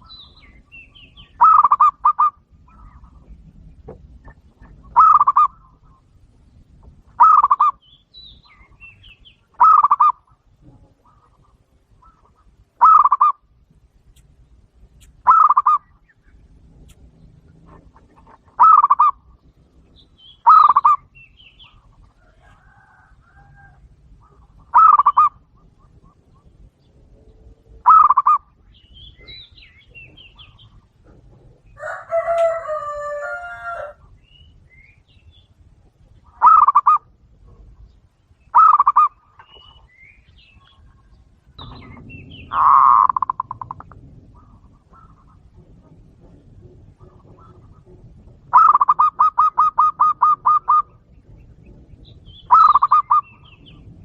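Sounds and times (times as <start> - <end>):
loud rolling bird calls: 0.0 - 54.0
rooster crowing: 22.2 - 24.0, 31.8 - 34.1.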